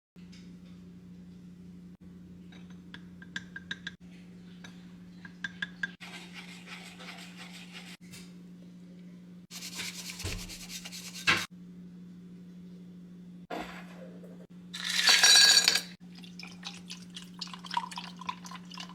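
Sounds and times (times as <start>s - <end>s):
utensil tapping against a bowl: 2.9s - 4.0s, 5.2s - 6.0s
rubbing and rasping scrapes: 6.0s - 8.0s.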